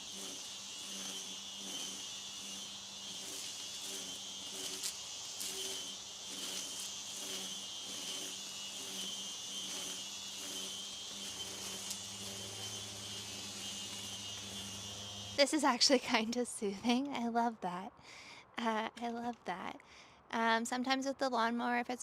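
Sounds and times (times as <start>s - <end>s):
string trimmer cutting grass: 0.0s - 17.0s.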